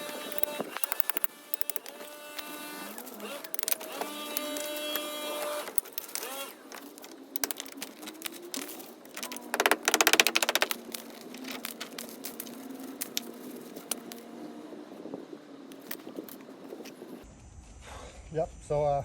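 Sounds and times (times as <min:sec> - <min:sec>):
tool knocking and scraping brick: 0:00.3 - 0:11.2
rapid hammering: 0:09.2 - 0:11.0.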